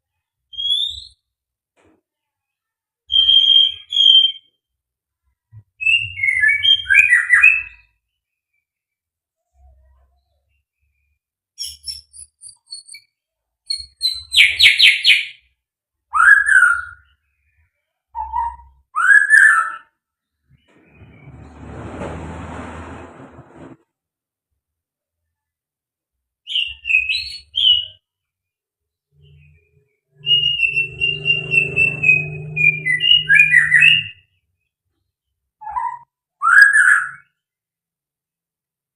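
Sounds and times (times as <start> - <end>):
low hum: 20.8 - 23.8
bird singing: 29.1 - 34.4.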